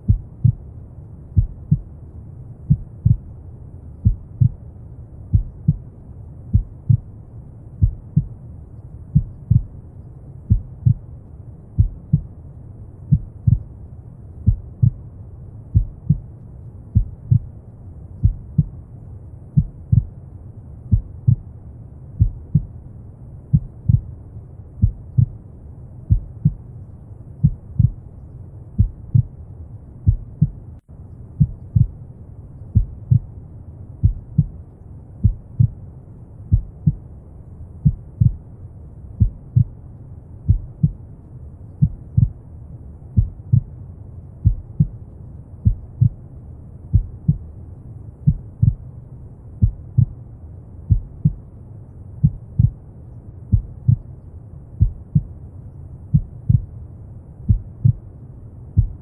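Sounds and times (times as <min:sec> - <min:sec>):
heartbeat thumps: 0:00.0 - 0:00.6, 0:01.4 - 0:01.9, 0:02.6 - 0:03.3, 0:04.0 - 0:04.6, 0:05.3 - 0:05.9, 0:06.5 - 0:07.1, 0:07.8 - 0:08.4, 0:09.1 - 0:09.7, 0:10.5 - 0:11.0, 0:11.8 - 0:12.3, 0:13.1 - 0:13.7, 0:14.4 - 0:15.0, 0:15.7 - 0:16.3, 0:17.0 - 0:17.5, 0:18.2 - 0:18.7, 0:19.6 - 0:20.2, 0:20.9 - 0:21.4, 0:22.2 - 0:22.7, 0:23.5 - 0:24.1, 0:24.8 - 0:25.4, 0:26.1 - 0:26.6, 0:27.4 - 0:28.0, 0:28.8 - 0:29.4, 0:30.0 - 0:30.7, 0:31.4 - 0:32.0, 0:32.8 - 0:33.3, 0:34.0 - 0:34.5, 0:35.2 - 0:35.8, 0:36.5 - 0:37.0, 0:37.8 - 0:38.4, 0:39.2 - 0:39.8, 0:40.5 - 0:41.0, 0:41.8 - 0:42.4, 0:43.2 - 0:43.7, 0:44.4 - 0:45.0, 0:45.6 - 0:46.2, 0:46.9 - 0:47.5, 0:48.2 - 0:48.8, 0:49.6 - 0:50.2, 0:50.9 - 0:51.5, 0:52.2 - 0:52.8, 0:53.5 - 0:54.1, 0:54.8 - 0:55.3, 0:56.1 - 0:56.7, 0:57.5 - 0:58.0, 0:58.8 - 0:59.0.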